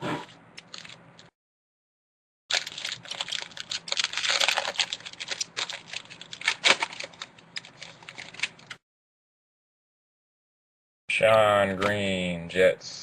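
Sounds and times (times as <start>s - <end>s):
trading cards crinkling and rustling: 0.6s - 1.3s, 2.5s - 8.8s
card pack tearing: 2.5s - 8.8s.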